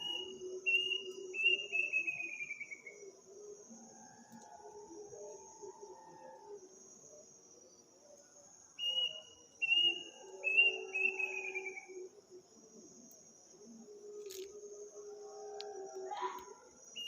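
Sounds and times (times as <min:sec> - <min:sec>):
bird whistled notes: 0:08.8 - 0:11.8
insects shrilling: 0:14.0 - 0:14.9.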